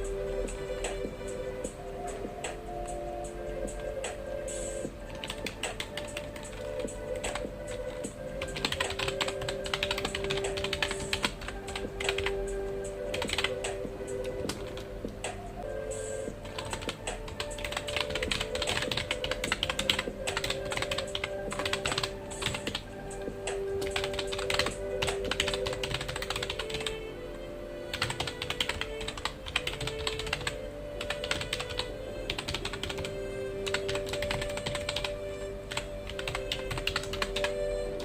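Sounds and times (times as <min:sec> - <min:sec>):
soft background music: 0:00.0 - 0:38.0
computer keyboard typing: 0:05.1 - 0:14.9, 0:16.4 - 0:27.0, 0:27.9 - 0:37.6.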